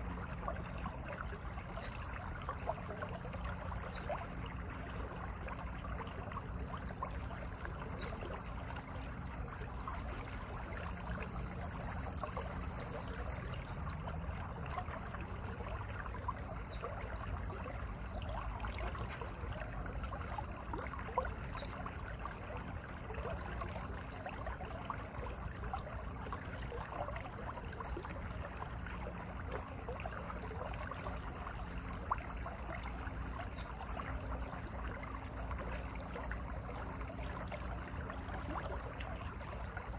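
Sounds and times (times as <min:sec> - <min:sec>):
stream flowing over rocks: 0:00.0 - 0:39.9
thin high steady tone: 0:06.0 - 0:13.5.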